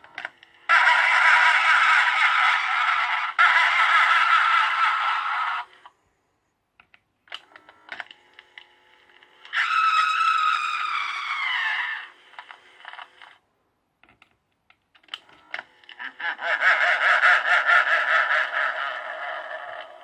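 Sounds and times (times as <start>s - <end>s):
pulsing ghostly laugh: 0.7s - 5.7s, 15.9s - 20.0s
clicks: 6.8s - 9.6s, 14.0s - 16.0s
falling scream: 9.5s - 12.2s.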